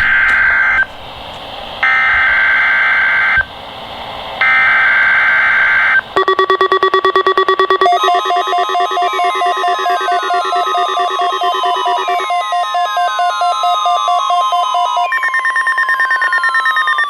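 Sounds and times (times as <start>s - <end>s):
screeching digital data bursts: 4.5s - 17.0s
rapid multi-tone electronic beeping: 5.5s - 17.0s.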